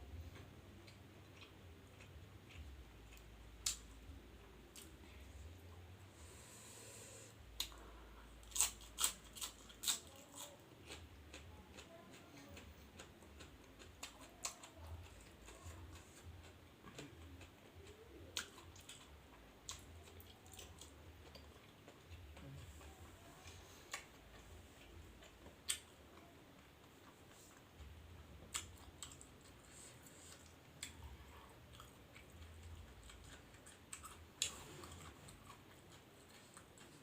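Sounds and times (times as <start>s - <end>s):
person chewing: 0.3s - 5.4s, 7.6s - 37.0s.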